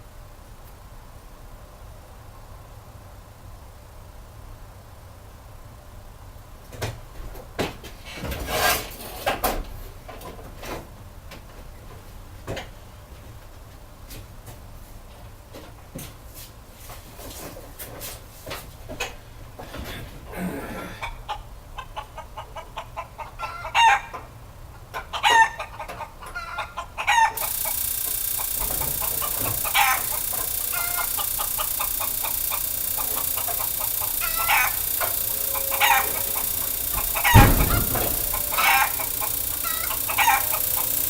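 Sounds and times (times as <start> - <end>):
chickens clucking: 20.9 - 41.0
steady hiss: 27.4 - 41.0.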